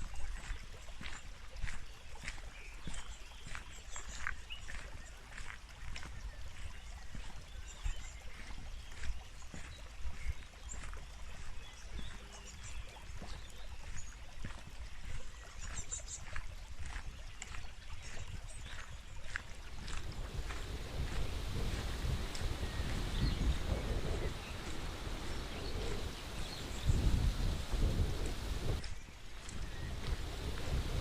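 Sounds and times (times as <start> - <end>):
wind rumble on microphone: 16.5 - 31.0.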